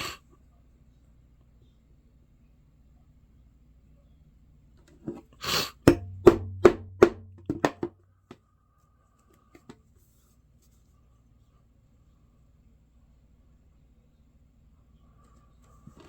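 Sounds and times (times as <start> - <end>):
low hum: 5.9 - 7.8
sharp knocks: 5.9 - 7.9.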